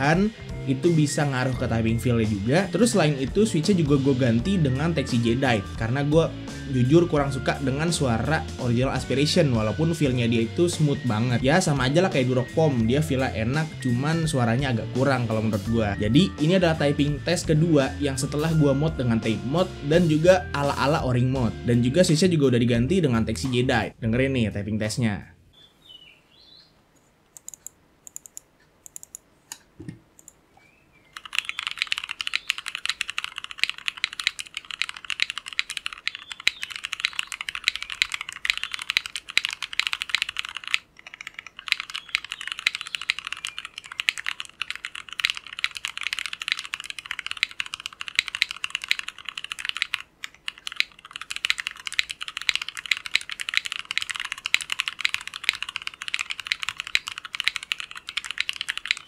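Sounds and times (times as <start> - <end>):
fast typing on mechanical keyboard: 31.2 - 59.0.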